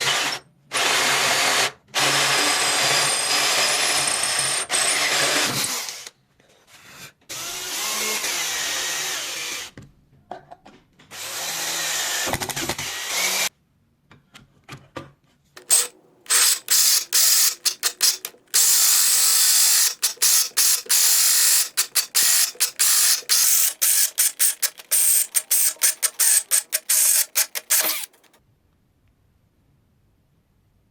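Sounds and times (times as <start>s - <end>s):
power drill with hole saw in wood: 0.0s - 6.1s, 7.3s - 9.8s, 11.1s - 13.5s, 15.6s - 28.4s.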